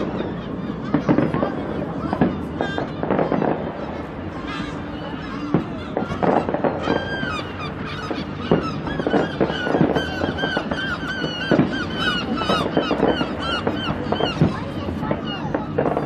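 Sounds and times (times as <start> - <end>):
fireworks bangs and crackles: 0.0 - 16.0
fireworks high squealing whistles: 5.4 - 16.0.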